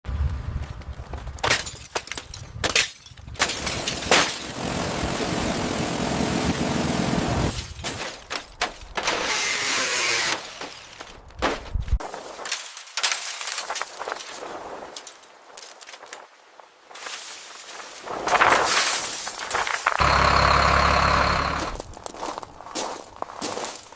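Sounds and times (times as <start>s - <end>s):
sharp knocks and breaking: 1.4s - 4.6s, 7.5s - 14.3s.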